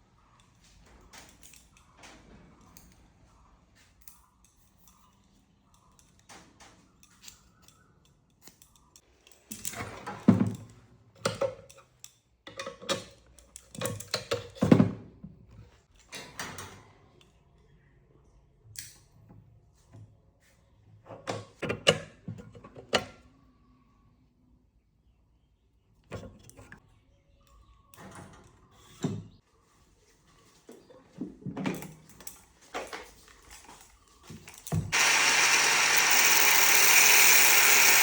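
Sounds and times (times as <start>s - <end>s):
light clicks of metal parts: 11.3s - 14.6s.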